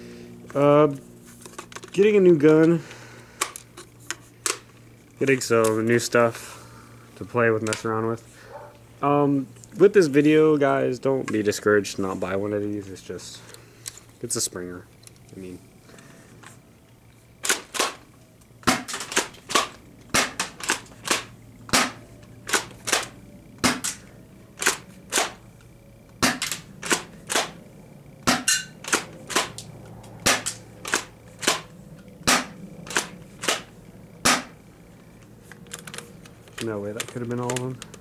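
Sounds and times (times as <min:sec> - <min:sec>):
airsoft shotgun pumping and firing: 0:17.4 - 0:18.0, 0:18.6 - 0:25.4, 0:26.2 - 0:27.6, 0:28.2 - 0:29.6, 0:30.2 - 0:34.6.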